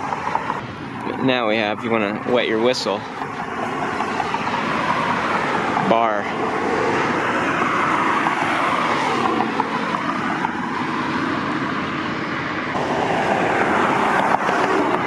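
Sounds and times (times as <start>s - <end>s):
passing vehicle engines: 0.0s - 15.0s.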